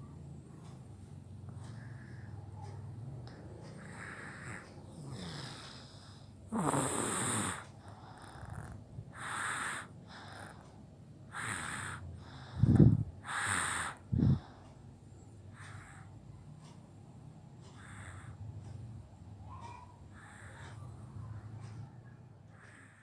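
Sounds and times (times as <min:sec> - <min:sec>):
baby congested breathing: 0:03.7 - 0:14.8, 0:15.5 - 0:16.8, 0:17.6 - 0:18.6, 0:19.5 - 0:21.8, 0:22.5 - 0:23.0.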